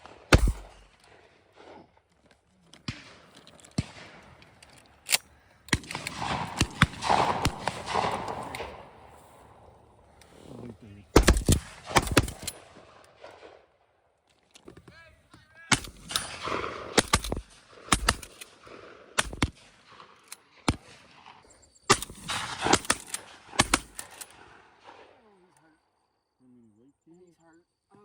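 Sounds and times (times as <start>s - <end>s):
shotgun shots with echo: 0.0s - 1.9s, 2.8s - 4.6s, 5.7s - 9.7s, 11.2s - 13.7s, 15.7s - 25.2s.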